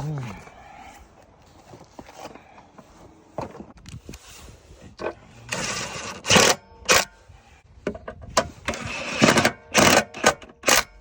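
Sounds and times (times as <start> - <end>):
rasping scrape: 4.1 - 7.6.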